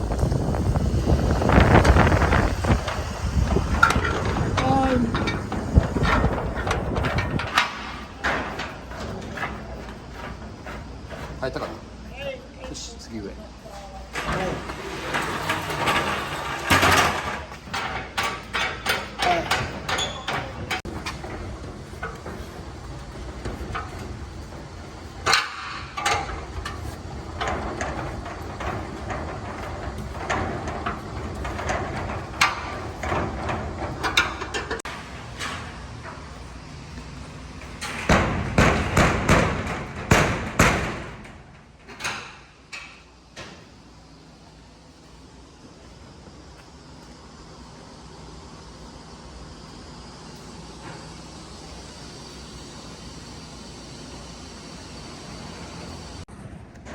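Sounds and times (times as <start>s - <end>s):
metal shutter rattling and knocking: 0.0s - 12.0s, 14.2s - 36.3s, 37.7s - 42.6s
heavy knocks and bangs on shutter: 37.8s - 41.6s.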